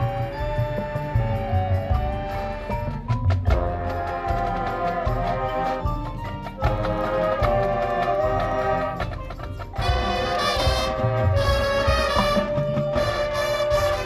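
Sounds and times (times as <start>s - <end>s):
marching band playing: 0.0s - 14.0s
percussion hits: 0.0s - 14.0s
brass sustained chords: 9.8s - 14.0s.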